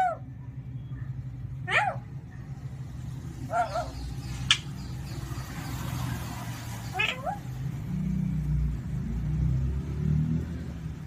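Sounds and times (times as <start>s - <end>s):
parrot calls: 0.0s - 2.3s, 3.2s - 7.7s.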